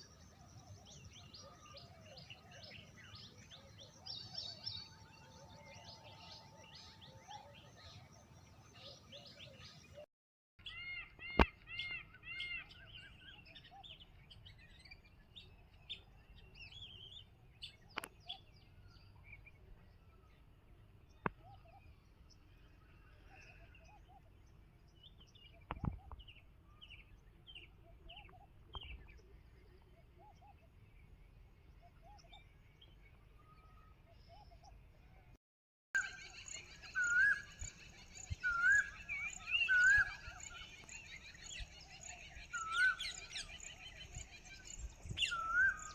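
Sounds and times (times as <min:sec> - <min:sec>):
birds chirping and calling: 0:36.0 - 0:45.9
repeated whistled bird notes: 0:36.0 - 0:45.9.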